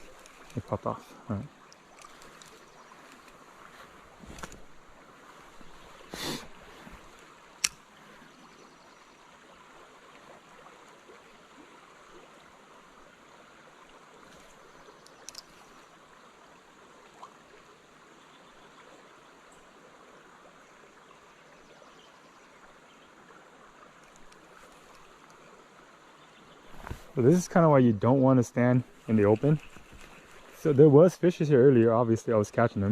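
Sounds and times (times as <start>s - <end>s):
brief rustle: 0.0s - 0.7s, 1.9s - 4.7s, 26.7s - 27.2s, 28.9s - 30.8s
creek running: 0.0s - 32.9s
sharp click: 7.6s - 7.8s.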